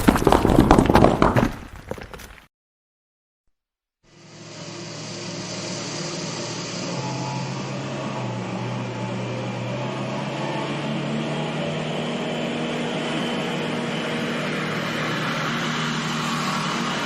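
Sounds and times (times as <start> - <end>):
vehicle engine hum: 4.1 - 17.0.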